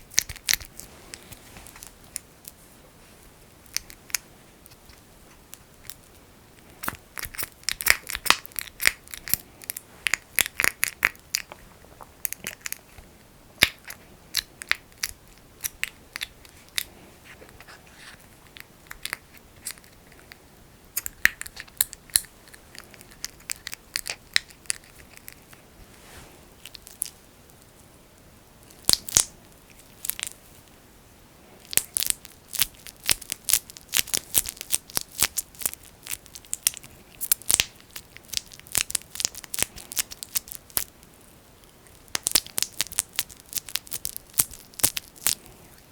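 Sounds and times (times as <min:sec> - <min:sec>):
fingers squishing sticky jelly: 0:00.0 - 0:02.6, 0:03.6 - 0:13.0, 0:13.6 - 0:16.9, 0:31.6 - 0:45.5.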